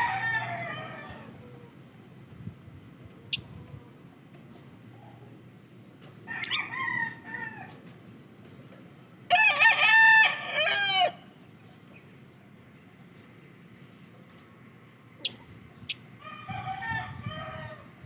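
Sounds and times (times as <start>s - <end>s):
rooster crowing: 0.0s - 1.7s, 6.2s - 8.0s, 9.3s - 11.3s, 16.2s - 18.0s.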